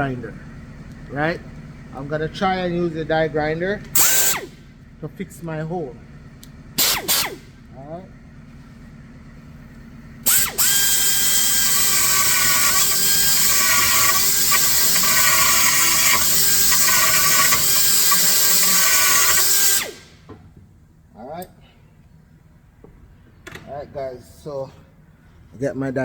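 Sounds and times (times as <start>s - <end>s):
die grinder whining: 3.8s - 4.6s, 6.8s - 7.6s, 10.2s - 20.3s.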